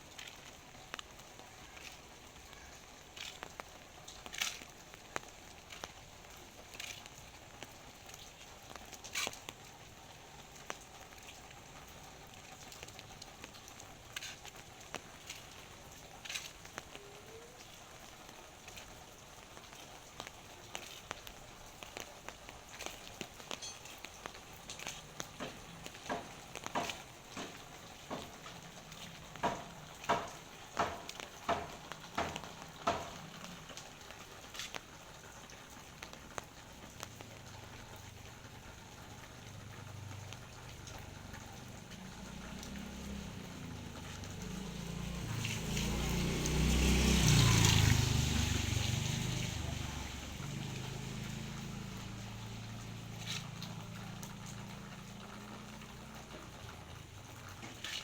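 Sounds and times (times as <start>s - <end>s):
rain pattering: 0.0s - 58.0s
vehicle engine rumble: 11.6s - 58.0s
drops ticking: 18.0s - 57.8s.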